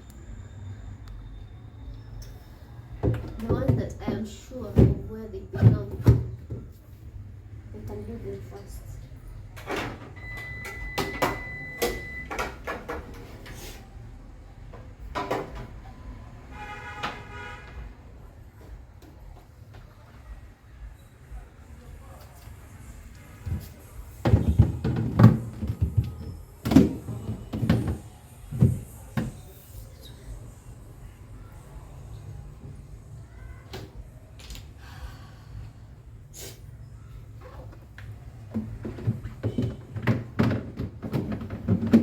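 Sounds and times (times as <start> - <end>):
plastic fridge parts knocking: 3.0 - 6.7, 24.2 - 29.4, 38.5 - 42.0.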